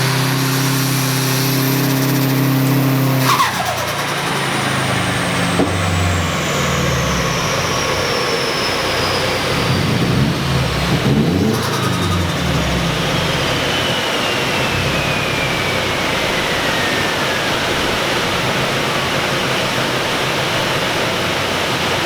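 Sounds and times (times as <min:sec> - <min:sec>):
turbo whine: 0:00.0 - 0:21.4
car engine revving on a dyno: 0:00.0 - 0:22.0.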